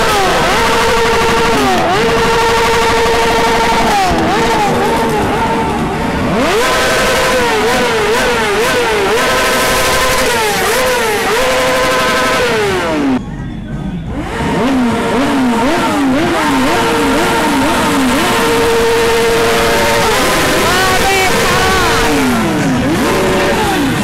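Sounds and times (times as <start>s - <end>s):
motorcycle engines revving: 0.0s - 24.0s.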